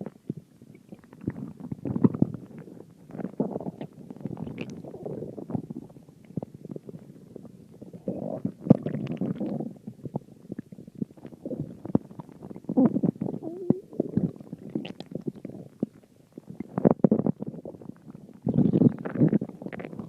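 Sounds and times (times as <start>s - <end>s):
stomach growling and gurgling: 0.0s - 20.0s
stomach squeal: 11.3s - 16.0s, 18.4s - 20.0s.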